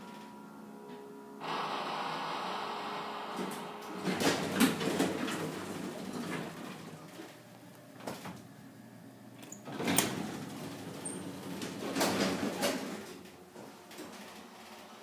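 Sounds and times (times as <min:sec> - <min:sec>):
elevator hum: 0:00.0 - 0:14.8
elevator clunks and rattles: 0:04.0 - 0:07.3, 0:09.6 - 0:13.3.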